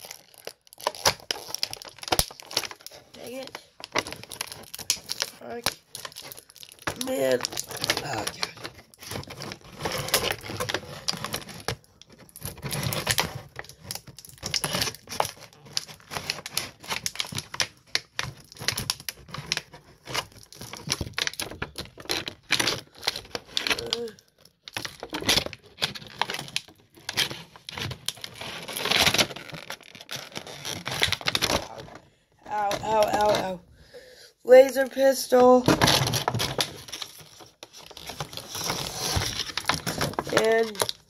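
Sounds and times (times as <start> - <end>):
plastic toy and packaging handled: 0.0 - 41.0.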